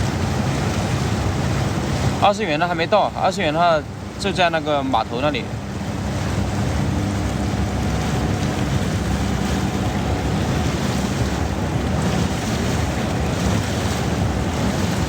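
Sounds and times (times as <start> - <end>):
low motor drone: 0.0 - 15.0
rushing water: 0.0 - 15.0
wind noise on microphone: 5.4 - 15.0.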